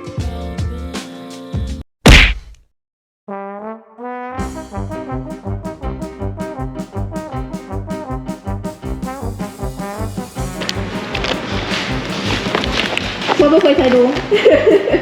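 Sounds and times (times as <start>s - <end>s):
steady drum beat: 0.0s - 1.0s, 4.4s - 15.0s
upbeat brass music: 3.3s - 15.0s.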